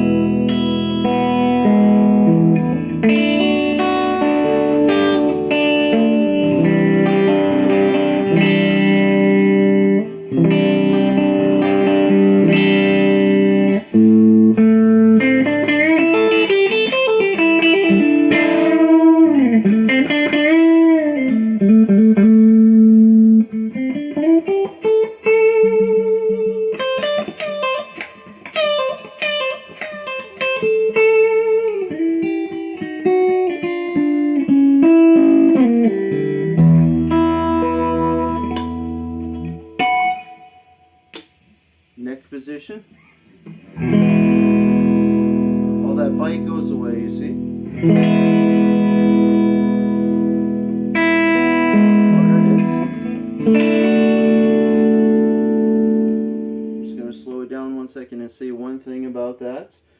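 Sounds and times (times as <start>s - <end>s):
clean electric guitar playing: 0.0s - 41.7s, 43.0s - 57.9s.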